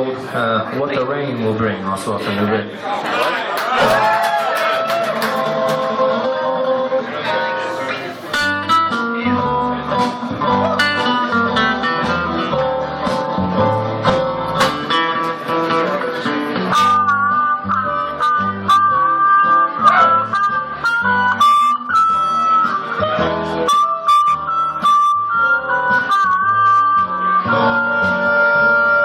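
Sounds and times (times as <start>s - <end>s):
held lead melody: 5.0s - 29.0s
plucked acoustic guitar: 5.3s - 29.0s
low bass line: 8.4s - 29.0s.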